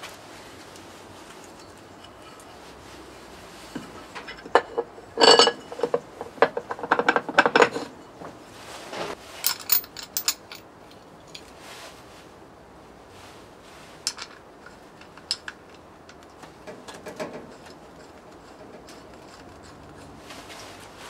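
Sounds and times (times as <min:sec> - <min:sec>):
metal tools clinking and clattering: 0:04.2 - 0:08.2, 0:09.4 - 0:11.5.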